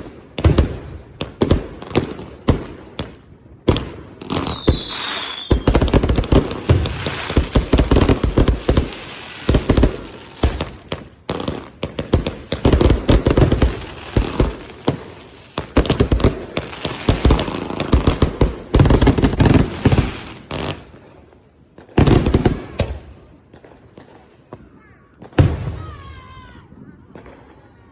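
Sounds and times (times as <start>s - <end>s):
fireworks bangs and crackles: 0.0s - 27.9s
falling firework whistle: 4.2s - 6.0s.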